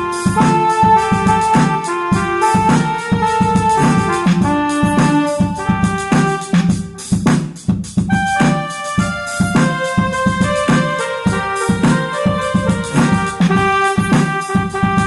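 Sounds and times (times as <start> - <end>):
keyboard drum rhythm: 0.0 - 15.0
electronic keyboard organ melody: 8.1 - 13.8.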